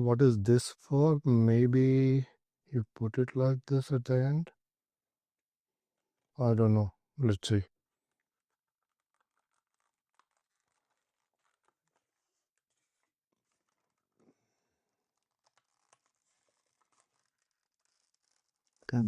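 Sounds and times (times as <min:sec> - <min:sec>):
faint crinkles of thin film: 0:08.0 - 0:19.0.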